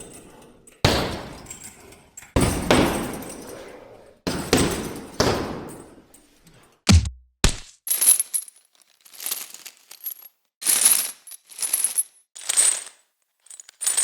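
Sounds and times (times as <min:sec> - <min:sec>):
punching bag hits: 0:06.9 - 0:07.7
chain jingling: 0:07.9 - 0:14.0.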